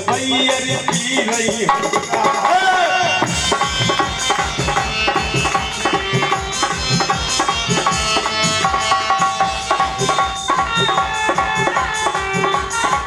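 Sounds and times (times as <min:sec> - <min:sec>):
hand drum beat: 0:00.0 - 0:13.0
sustained folk melody: 0:03.2 - 0:13.0.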